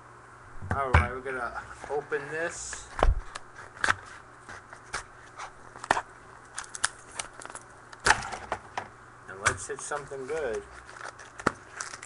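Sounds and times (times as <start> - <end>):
plastic wrap and cardboard crackling: 1.7 - 8.4, 9.6 - 12.0.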